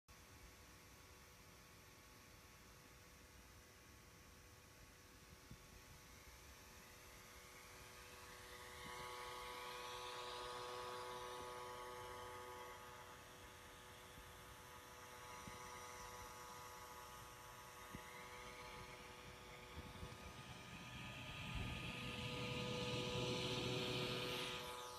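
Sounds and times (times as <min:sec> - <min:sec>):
cooling fan buzzing hum: 0:00.2 - 0:24.9
fan airflow rush: 0:17.4 - 0:24.9.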